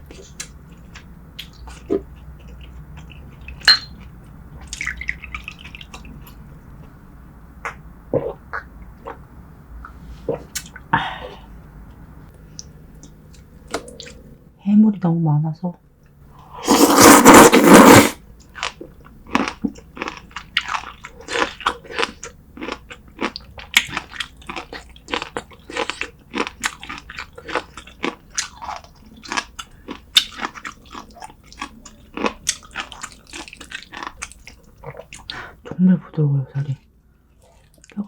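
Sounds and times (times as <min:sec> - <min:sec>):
close-miked chewing: 0:18.6 - 0:35.6, 0:36.7 - 0:38.0.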